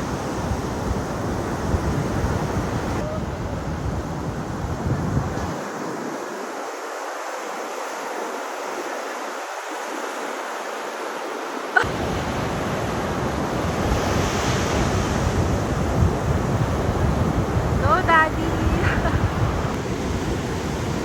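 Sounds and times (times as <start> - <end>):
wind rumble on microphone: 0.0 - 6.3, 11.9 - 21.0
ocean waves breaking: 0.0 - 21.0.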